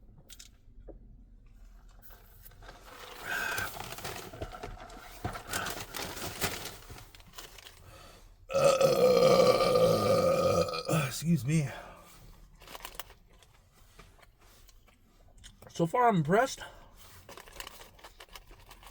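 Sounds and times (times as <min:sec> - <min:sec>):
eating and handling noises: 0:01.5 - 0:15.8, 0:16.8 - 0:18.9
long loud burp: 0:08.5 - 0:11.1.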